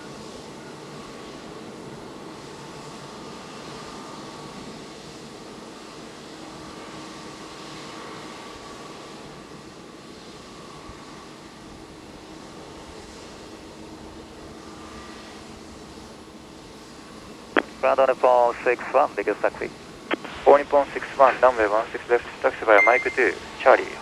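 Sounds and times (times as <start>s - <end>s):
jet aircraft rushing hum: 17.6s - 24.0s.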